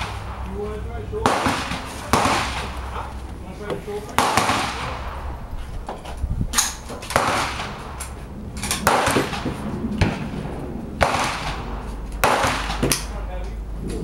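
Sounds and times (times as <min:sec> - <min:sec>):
rifle shots with echo: 0:00.0 - 0:03.0, 0:04.1 - 0:05.5, 0:06.6 - 0:13.2.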